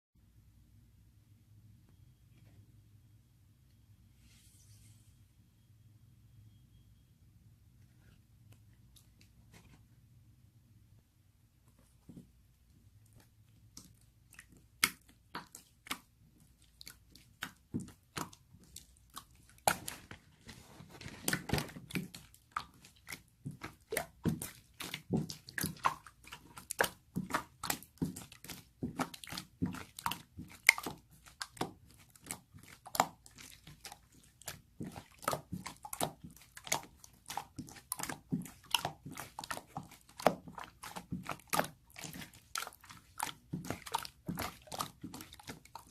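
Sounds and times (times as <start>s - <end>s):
slime squished by hand: 13.0s - 45.9s.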